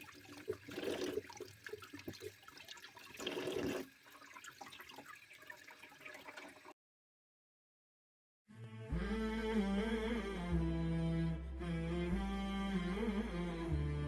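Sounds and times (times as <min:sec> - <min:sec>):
water running and splashing: 0:00.0 - 0:06.7.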